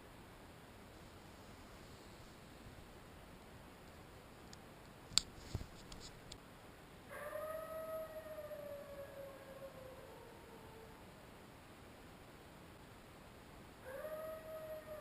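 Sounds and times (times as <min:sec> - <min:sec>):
long howl sliding down: 0:07.1 - 0:11.1, 0:13.8 - 0:15.0.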